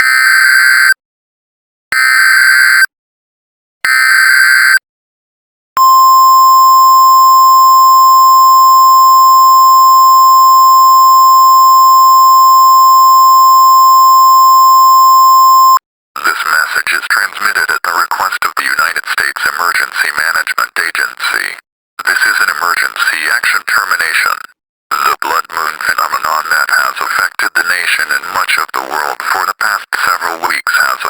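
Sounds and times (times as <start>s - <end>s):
steady single-pitch alert tone: 5.8s - 15.8s.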